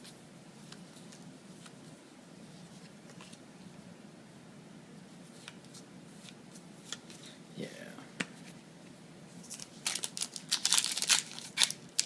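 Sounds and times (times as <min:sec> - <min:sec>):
low room hiss: 0:00.0 - 0:12.0
trading cards rustling: 0:09.4 - 0:12.0.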